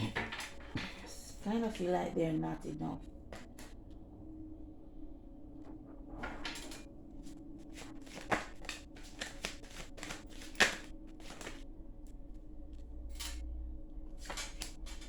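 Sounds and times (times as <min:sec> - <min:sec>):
cards shuffling: 0:07.7 - 0:11.6
sharp card snaps: 0:07.8 - 0:11.6.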